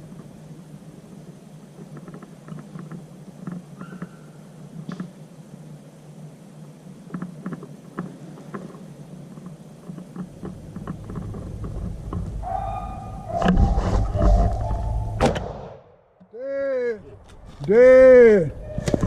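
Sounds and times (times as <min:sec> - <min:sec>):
crackling brush: 0:00.0 - 0:15.2
low rumble on microphone: 0:10.3 - 0:15.3
dogs baying: 0:12.4 - 0:15.2
sharp crack: 0:15.1 - 0:16.0.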